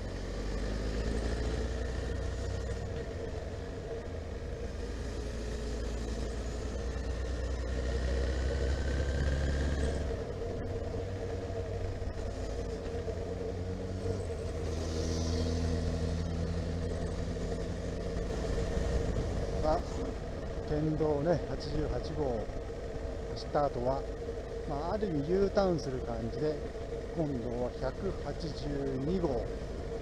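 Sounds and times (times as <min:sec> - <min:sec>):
motorcycle engine running: 0:00.0 - 0:30.0
wind noise: 0:18.2 - 0:20.5.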